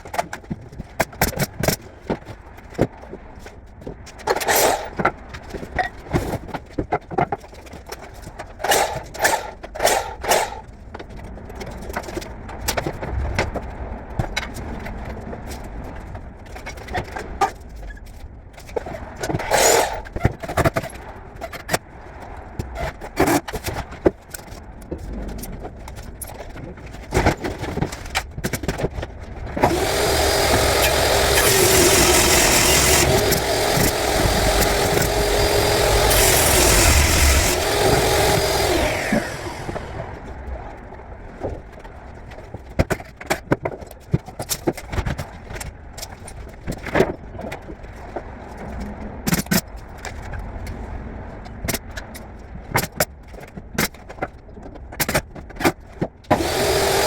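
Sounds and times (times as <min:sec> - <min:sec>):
electric power tool running: 0:04.4 - 0:05.0, 0:08.7 - 0:10.6, 0:19.5 - 0:20.0, 0:29.6 - 0:40.2, 0:56.3 - 0:57.0
knocks and clicks of wood and tools: 0:08.6 - 0:10.7, 0:29.6 - 0:40.1.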